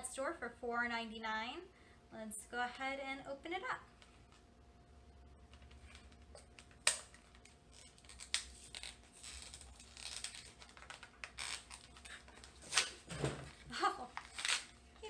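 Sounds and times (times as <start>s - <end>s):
package rustling: 5.6s - 15.0s.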